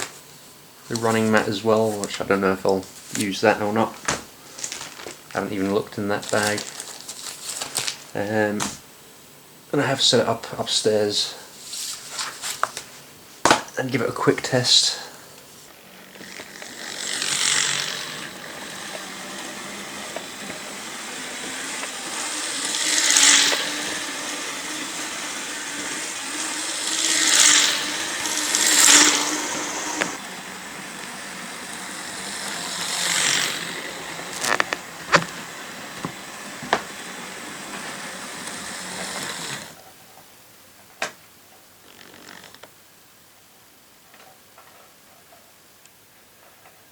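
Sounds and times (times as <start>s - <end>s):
model train motor whirring: 0.9s - 3.9s, 4.6s - 8.6s, 14.1s - 39.8s, 41.8s - 42.7s.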